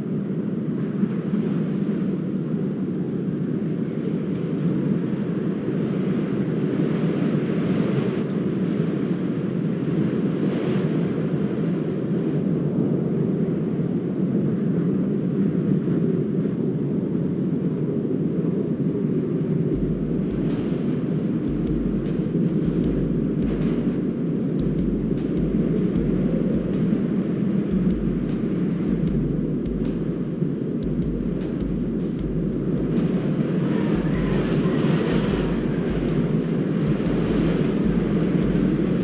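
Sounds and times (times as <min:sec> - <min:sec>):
steady low rumbling: 0:19.6 - 0:39.0
low thumps: 0:19.8 - 0:39.0.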